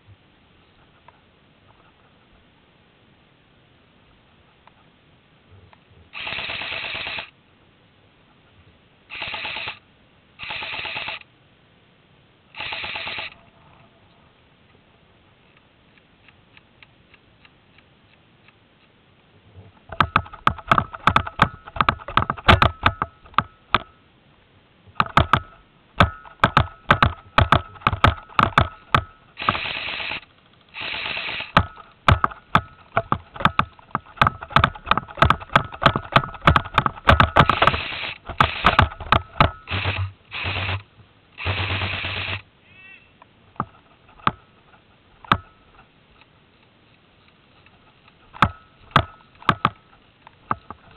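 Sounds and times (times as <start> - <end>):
airsoft guns firing: 9.1 - 9.8, 10.4 - 11.2, 12.6 - 13.4, 25.0 - 40.8, 41.4 - 42.4
mechanical whine: 34.3 - 42.4.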